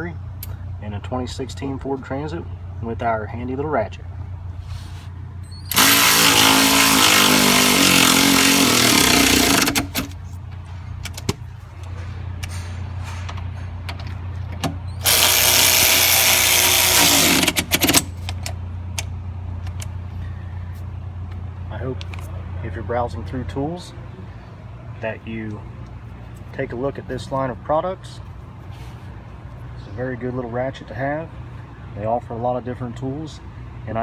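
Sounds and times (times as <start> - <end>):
steady low hum: 0.0 - 34.0
electric ratchet wrench whining: 5.4 - 10.2, 14.8 - 18.5
ratchet trigger blips: 5.4 - 10.2, 14.9 - 18.6.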